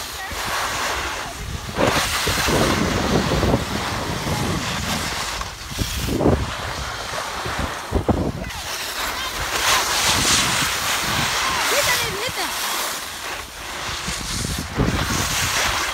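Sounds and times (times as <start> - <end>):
skis scraping on snow: 0.0 - 15.9
wind rushing over microphone: 0.0 - 15.9.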